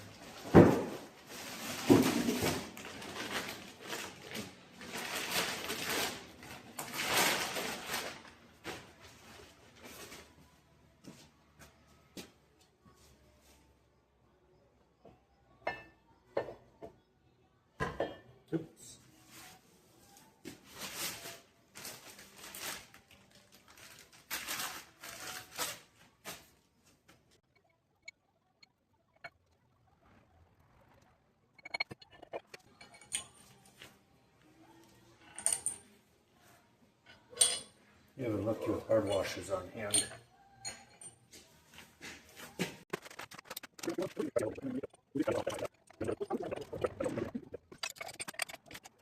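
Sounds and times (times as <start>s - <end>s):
scraping and rustling of hand work: 0.0s - 11.3s, 19.0s - 27.4s, 40.7s - 44.0s.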